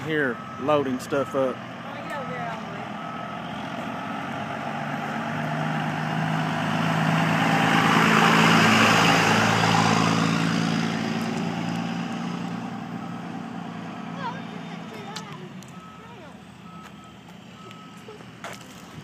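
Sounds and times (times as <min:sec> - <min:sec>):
vehicle driving past: 0:02.7 - 0:16.0.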